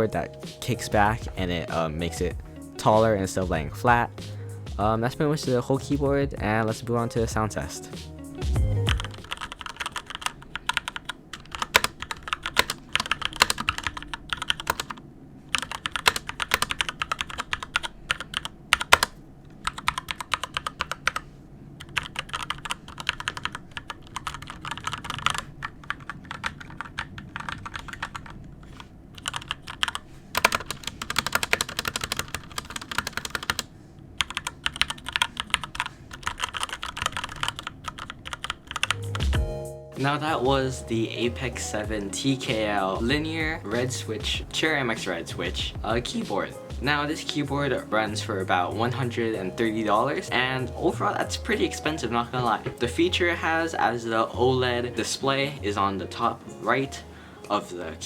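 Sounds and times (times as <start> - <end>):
mechanical keyboard typing: 8.9 - 21.2, 21.8 - 39.4.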